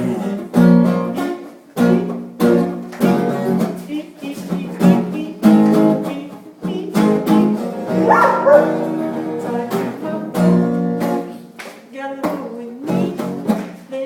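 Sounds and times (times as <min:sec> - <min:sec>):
guitar strumming chords: 0:00.0 - 0:11.5
dog howling: 0:07.9 - 0:08.9.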